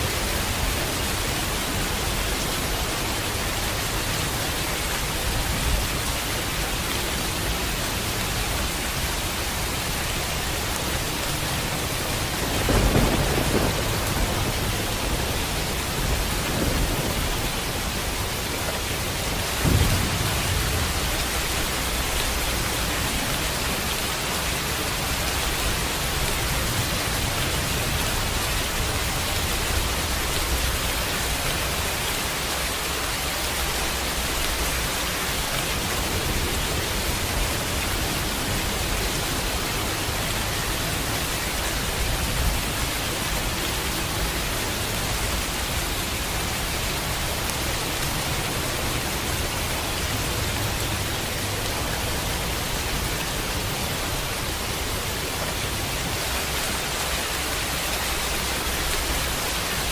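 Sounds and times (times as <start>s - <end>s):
steady rain falling: 0.0s - 59.9s
thunder rumbling: 11.5s - 31.4s.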